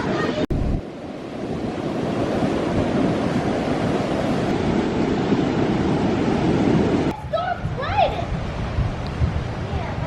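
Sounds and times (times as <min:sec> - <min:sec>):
ocean surf breaking: 0:00.0 - 0:10.0
wind buffeting microphone: 0:00.0 - 0:10.0.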